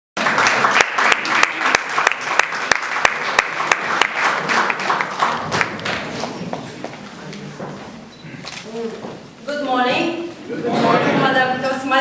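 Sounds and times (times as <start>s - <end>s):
audience applauding: 0.2s - 6.4s.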